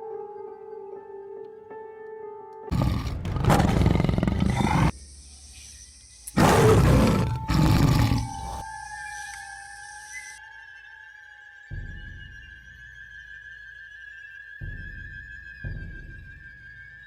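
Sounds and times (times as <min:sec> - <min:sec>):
faint background music tones: 0:00.0 - 0:02.8
tiger roaring: 0:02.7 - 0:04.9, 0:06.4 - 0:08.6.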